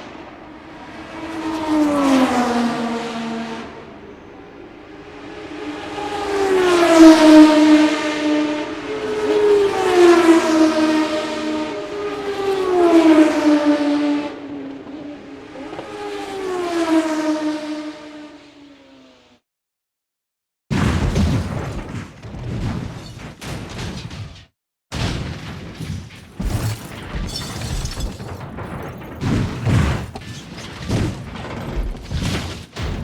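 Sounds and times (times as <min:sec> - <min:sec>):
fast cars passing: 0:00.0 - 0:19.4.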